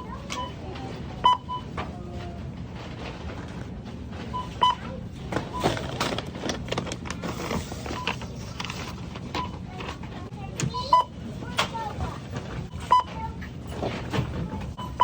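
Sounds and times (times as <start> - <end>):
barcode scanner beeps: 1.2 - 1.7, 4.3 - 4.8, 7.6 - 8.3, 12.8 - 13.1, 14.8 - 15.0
clatter of items being handled: 1.7 - 10.3, 11.5 - 14.8.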